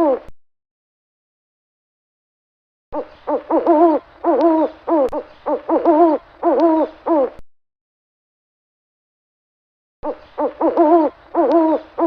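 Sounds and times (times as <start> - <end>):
owl hooting: 0.0 - 0.3, 3.0 - 7.4, 10.0 - 12.0.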